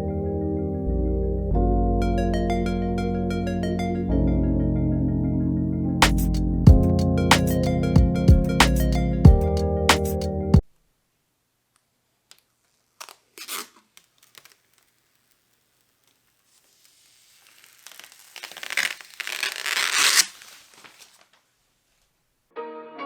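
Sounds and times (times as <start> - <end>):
tearing rips: 13.0 - 21.3.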